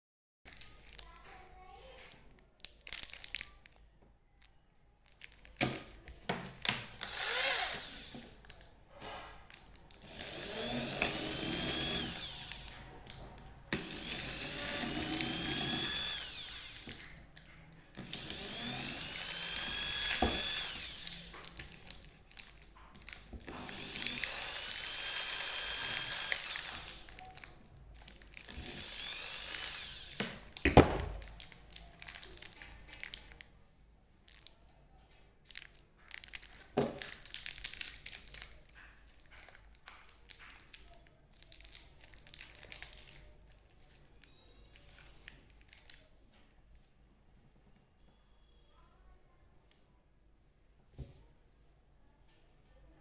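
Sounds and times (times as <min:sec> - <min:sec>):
electric drill whining: 0:07.0 - 0:08.4, 0:10.0 - 0:12.8, 0:13.7 - 0:17.0, 0:18.0 - 0:21.5, 0:23.4 - 0:27.2, 0:28.5 - 0:30.5.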